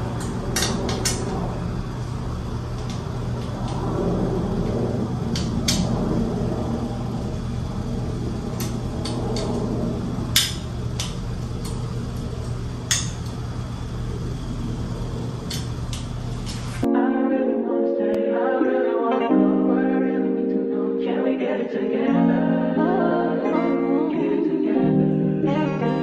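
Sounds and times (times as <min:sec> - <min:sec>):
lights clicking and clinking: 0:00.0 - 0:04.0, 0:04.6 - 0:16.9
steady low hum: 0:00.0 - 0:16.9.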